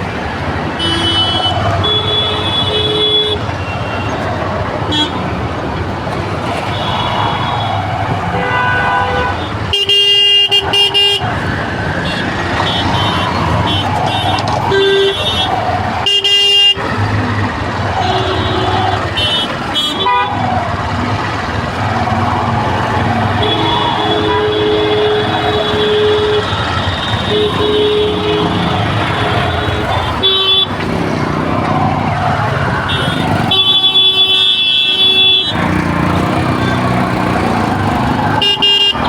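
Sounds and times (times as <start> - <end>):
traffic engine and road noise: 0.0 - 39.0
vehicle horns honking: 0.6 - 4.2, 4.8 - 5.3, 6.5 - 17.0, 17.9 - 20.6, 23.2 - 31.2, 32.7 - 39.0
loud long horn blasts: 0.8 - 4.1, 6.6 - 11.4, 12.0 - 17.1, 17.8 - 20.6, 23.2 - 31.2, 32.7 - 39.0.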